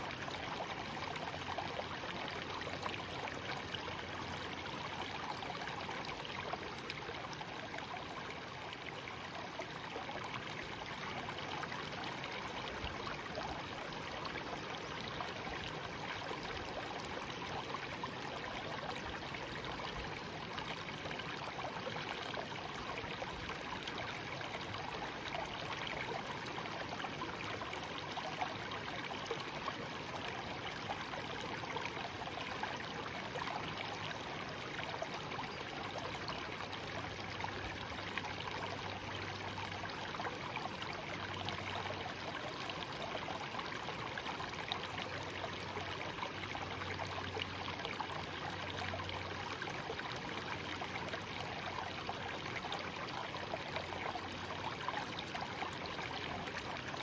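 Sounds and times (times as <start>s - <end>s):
stream babbling over stones: 0.0s - 57.0s.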